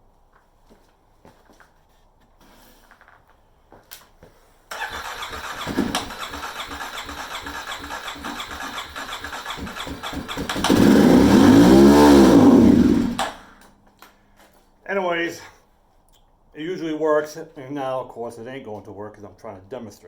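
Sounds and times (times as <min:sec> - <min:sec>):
electric starter cranking engine: 0:04.7 - 0:13.6.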